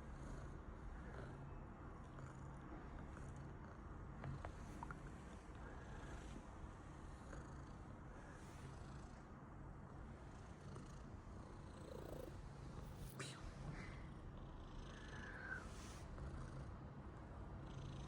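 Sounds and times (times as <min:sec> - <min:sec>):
cat purring: 0:10.4 - 0:13.4.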